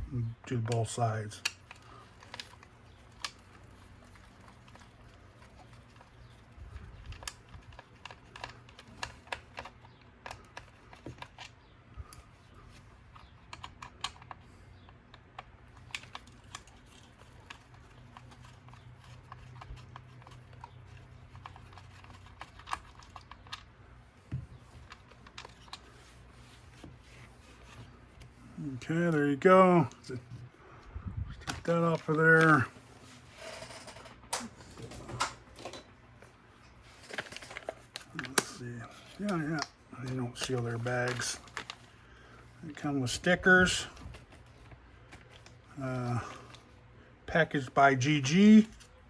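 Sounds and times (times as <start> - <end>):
tools and plastic parts clicking: 0.4 - 28.4, 36.8 - 41.9.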